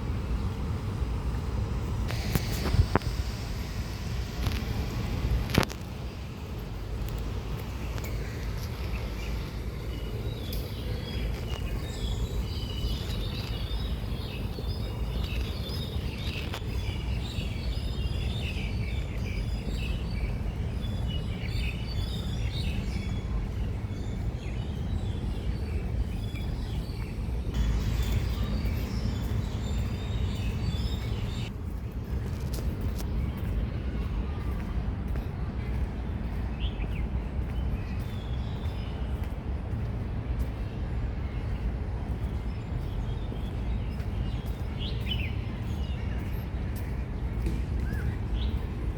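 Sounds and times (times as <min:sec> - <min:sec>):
low outdoor rumble: 0:00.0 - 0:48.9
small birds chirping: 0:02.0 - 0:31.5.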